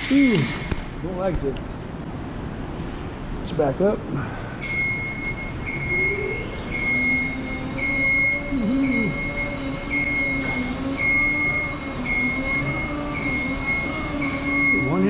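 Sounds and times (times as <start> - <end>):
lift motion alarm beeping: 4.6 - 15.0
electric motor whine: 6.6 - 14.7.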